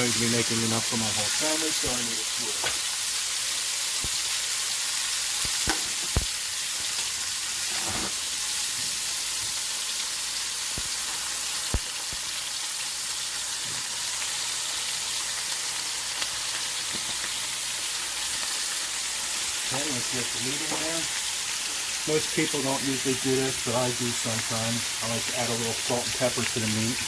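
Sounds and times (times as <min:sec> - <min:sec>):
steak sizzling in hot oil: 0:00.0 - 0:27.0.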